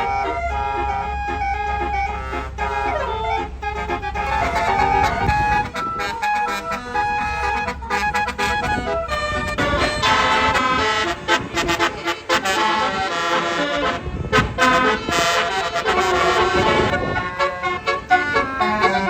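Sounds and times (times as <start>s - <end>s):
musical air horn playing tune: 0.0s - 19.0s.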